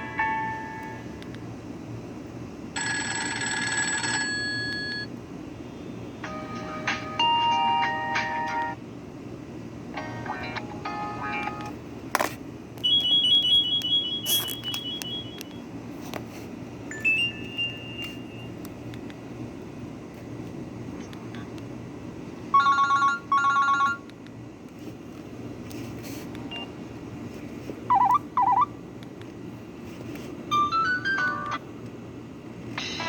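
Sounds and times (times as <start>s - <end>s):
telephone ring bursts: 2.8s - 5.1s
phone ringtones and alert tones: 12.9s - 15.6s, 27.9s - 28.7s.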